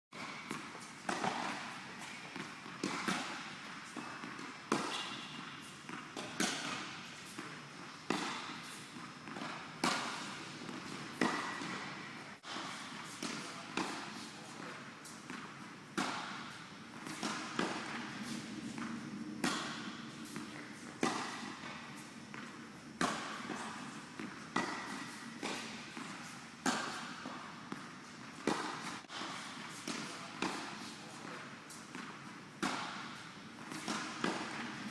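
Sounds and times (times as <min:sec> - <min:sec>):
tennis racket striking ball: 0:00.2 - 0:07.5, 0:08.1 - 0:34.9.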